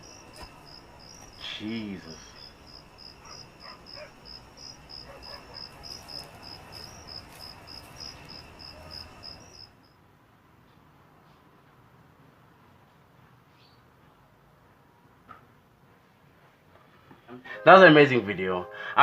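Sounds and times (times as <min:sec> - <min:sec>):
cricket chirping: 0:00.0 - 0:10.0.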